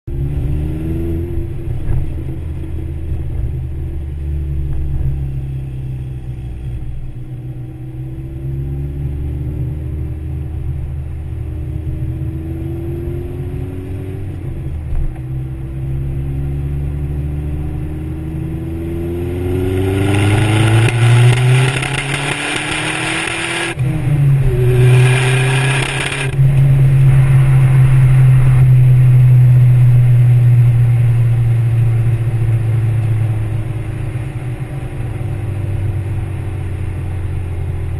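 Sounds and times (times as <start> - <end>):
car engine revving under boost: 18.8 - 29.8.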